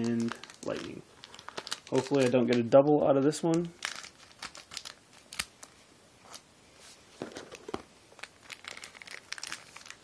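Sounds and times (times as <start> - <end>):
wrapper tearing and crinkling: 0.0 - 2.3, 3.8 - 5.8, 8.1 - 10.0.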